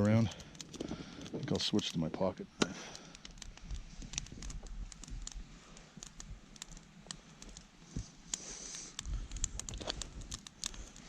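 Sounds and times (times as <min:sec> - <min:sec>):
knife whittling wood clicks: 0:02.6 - 0:11.0.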